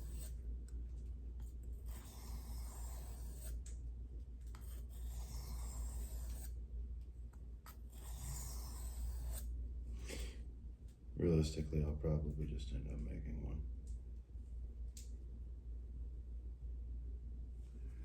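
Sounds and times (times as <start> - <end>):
knife on sharpening stone: 4.6 - 6.5, 7.7 - 9.4.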